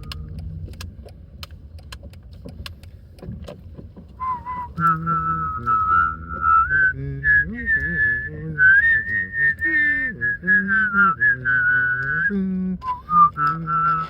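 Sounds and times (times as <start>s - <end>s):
low steady rumble: 0.0s - 14.0s
person humming: 4.4s - 14.0s.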